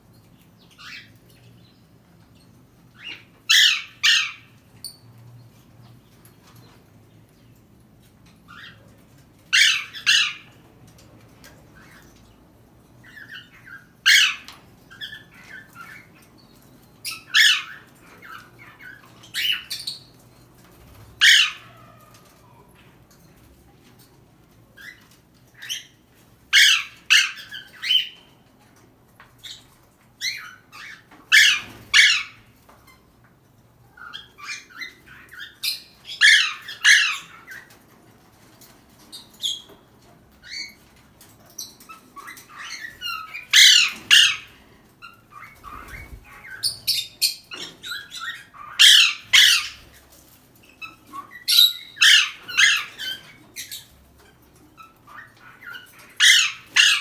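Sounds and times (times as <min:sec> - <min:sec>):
parrot squawking: 0:03.0 - 0:04.5, 0:09.6 - 0:10.6, 0:13.2 - 0:15.6, 0:17.1 - 0:19.8, 0:21.2 - 0:22.6, 0:26.5 - 0:28.2, 0:30.4 - 0:32.4, 0:34.0 - 0:37.7, 0:42.2 - 0:50.0, 0:50.8 - 0:53.4, 0:54.8 - 0:57.0.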